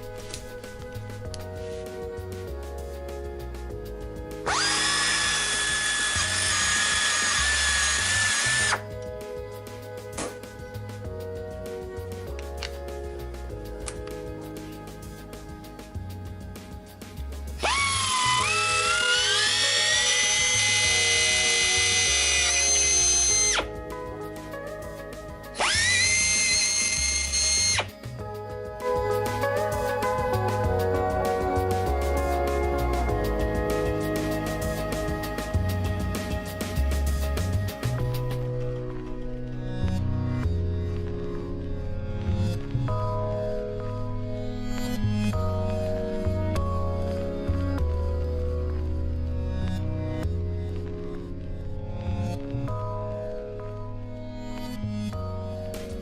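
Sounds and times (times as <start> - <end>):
pneumatic drill whining: 4.4 - 8.8, 17.6 - 23.7, 25.5 - 28.0.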